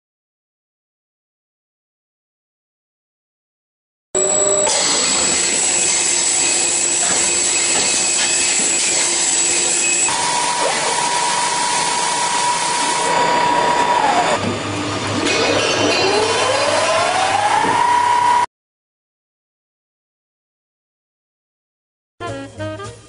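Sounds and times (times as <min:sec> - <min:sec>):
machine spindles whirring: 0:04.2 - 0:18.5
motor whine: 0:04.2 - 0:18.5.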